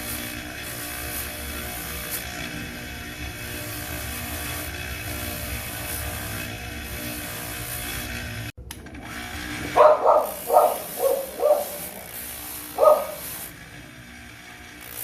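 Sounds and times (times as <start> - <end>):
dog barking: 9.8 - 11.9, 12.8 - 13.3.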